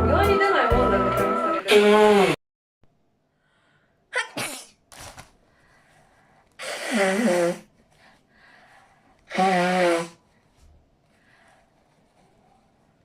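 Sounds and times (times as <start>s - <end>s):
woman's bursts of breath: 8.0s - 9.2s.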